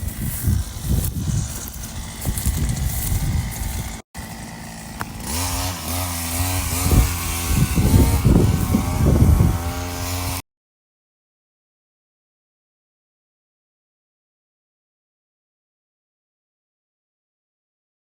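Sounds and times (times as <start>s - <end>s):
small petrol engine revving: 0.0s - 10.4s.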